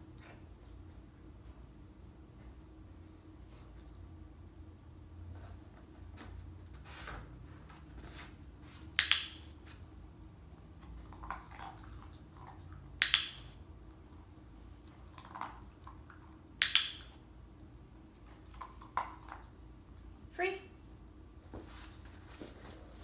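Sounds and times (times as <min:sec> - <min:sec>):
clicker double click: 0:16.6 - 0:17.1
soft rustles: 0:21.4 - 0:23.0.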